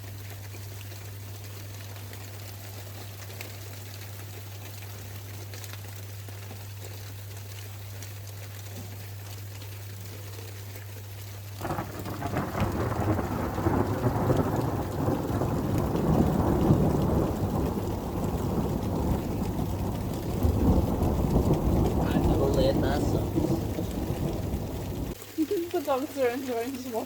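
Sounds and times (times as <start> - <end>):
rain falling: 0.0 - 27.0
thunder rumbling: 11.6 - 25.2.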